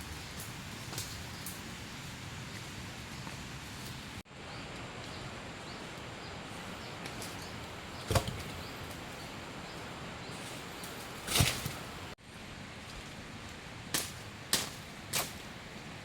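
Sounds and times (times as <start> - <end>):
blade chopping wood: 8.0 - 8.6, 11.2 - 11.9.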